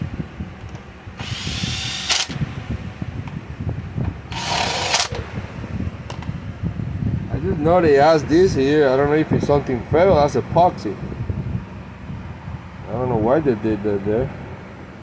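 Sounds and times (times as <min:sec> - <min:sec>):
recoil starter cord pulled: 0:00.6 - 0:02.6, 0:04.3 - 0:05.4.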